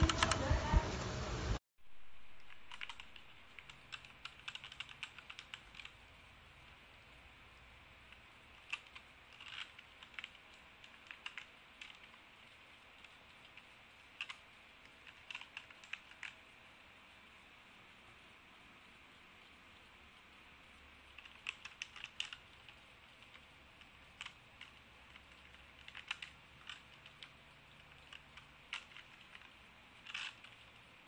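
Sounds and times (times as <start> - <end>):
mechanical keyboard typing: 0.0 - 0.8, 2.4 - 6.0, 8.1 - 16.4, 21.1 - 30.8.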